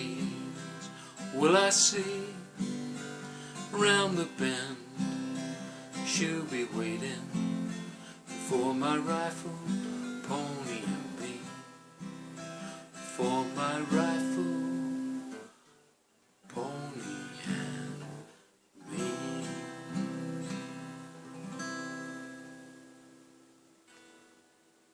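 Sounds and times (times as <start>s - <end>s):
acoustic guitar strumming: 0.0s - 15.9s, 16.5s - 24.6s.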